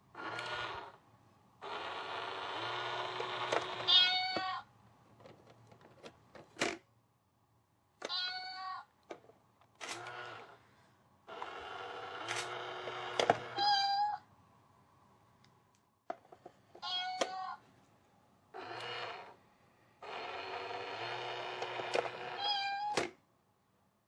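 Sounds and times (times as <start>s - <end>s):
cat meowing and yowling: 3.9s - 4.7s, 8.0s - 8.9s, 13.5s - 14.2s, 16.8s - 17.6s, 22.4s - 23.0s.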